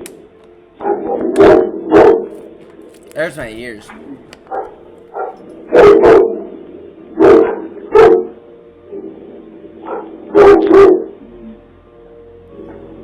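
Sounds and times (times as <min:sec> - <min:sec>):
dog barking loudly: 0:07.2 - 0:08.3.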